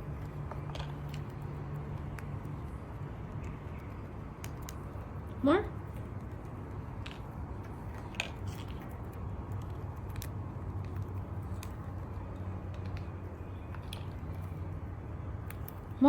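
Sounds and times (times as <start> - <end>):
steady low hum: 0.0 - 16.0
faint clicks and taps: 5.9 - 14.6.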